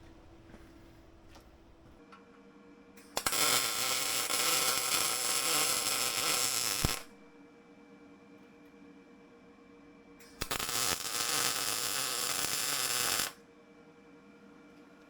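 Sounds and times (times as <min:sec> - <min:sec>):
electrical hum: 0:00.0 - 0:02.0
arc welding crackle and hiss: 0:03.2 - 0:07.1, 0:10.4 - 0:13.4.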